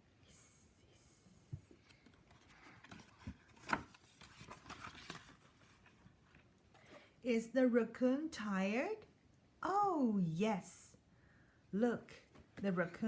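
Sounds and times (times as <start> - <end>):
picture book pages rustling: 1.6 - 7.2.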